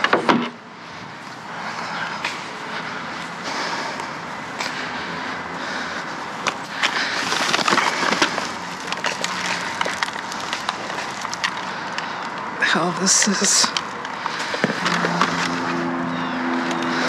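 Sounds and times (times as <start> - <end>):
rummaging through trash: 4.6 - 17.0.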